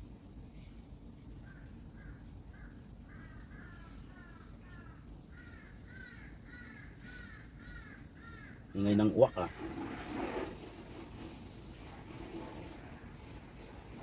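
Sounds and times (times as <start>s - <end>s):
crows cawing: 1.4s - 9.0s.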